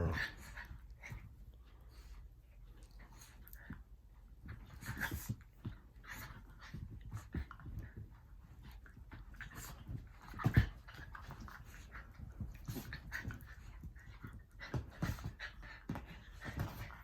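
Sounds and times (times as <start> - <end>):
dogs panting: 0.0 - 17.0
dogs scuffling: 4.4 - 17.0.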